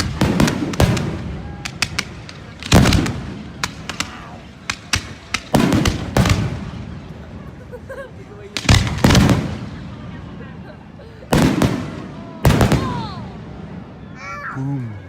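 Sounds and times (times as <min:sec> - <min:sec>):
firework shells bursting: 0:00.0 - 0:06.9.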